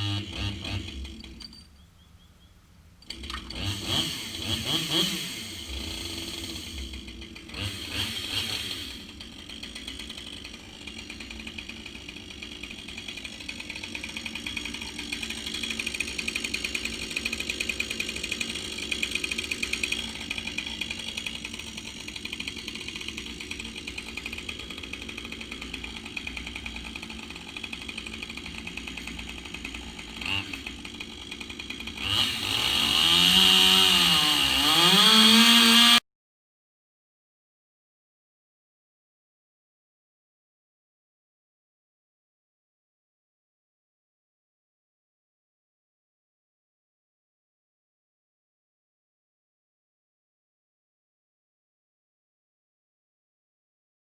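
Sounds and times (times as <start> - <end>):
chainsaw idling and revving: 0.0 - 1.7, 3.0 - 36.0.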